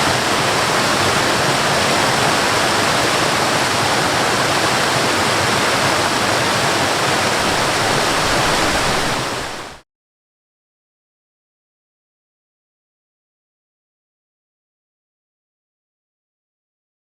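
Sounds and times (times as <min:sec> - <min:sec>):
waterfall roaring: 0:00.0 - 0:09.8.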